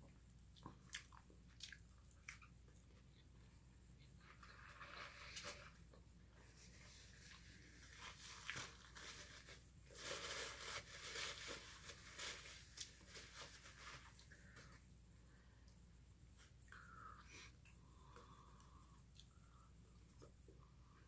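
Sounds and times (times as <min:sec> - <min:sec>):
food packaging crackling and rustling: 0:04.2 - 0:14.8.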